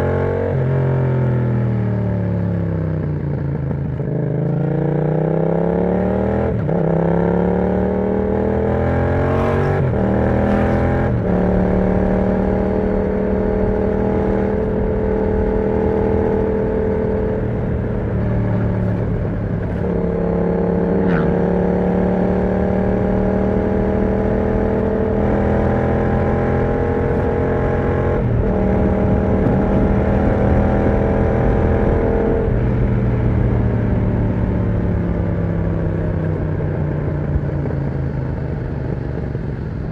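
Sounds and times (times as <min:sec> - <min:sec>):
motorcycle engine accelerating: 0:00.0 - 0:39.9
gear changes: 0:09.1 - 0:13.0, 0:17.4 - 0:23.3.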